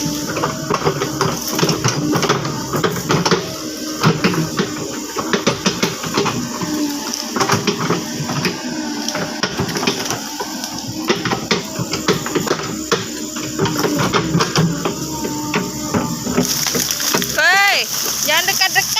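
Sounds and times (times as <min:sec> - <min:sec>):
metal knocks and clanks: 0:00.0 - 0:18.6
excavator engine running: 0:00.0 - 0:18.9.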